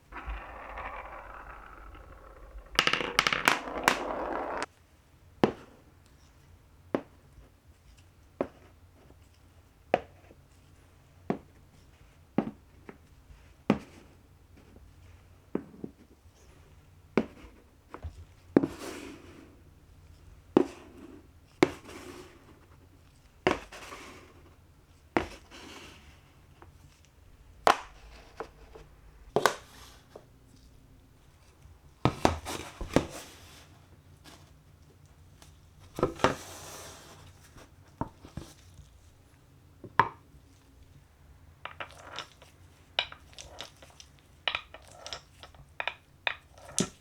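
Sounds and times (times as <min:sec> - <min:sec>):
marbles knocking on wood: 0:00.0 - 0:04.7, 0:27.2 - 0:30.3
marbles rolling along track: 0:00.0 - 0:04.7, 0:27.2 - 0:29.9.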